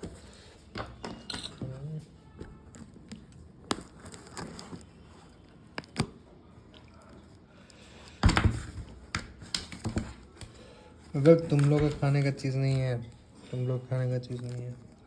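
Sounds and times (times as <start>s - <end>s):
parcel being unwrapped: 11.1s - 15.0s.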